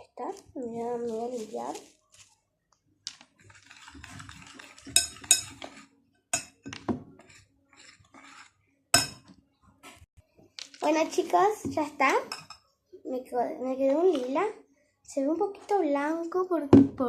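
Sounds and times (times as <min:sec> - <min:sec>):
soft rustling: 0:00.6 - 0:02.5
spoon clinking on plate: 0:04.8 - 0:05.8.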